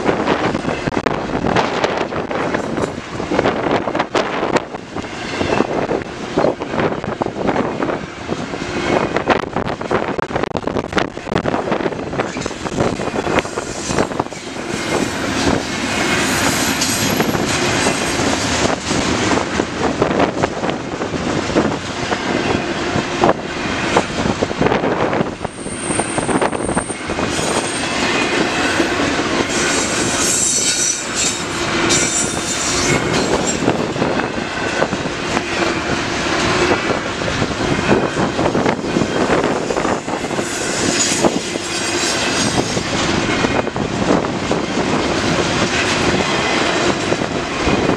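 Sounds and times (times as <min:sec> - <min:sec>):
freight train rumble: 0:00.0 - 0:47.9
high wheel squeal: 0:12.3 - 0:18.4, 0:25.4 - 0:33.8, 0:39.0 - 0:42.8.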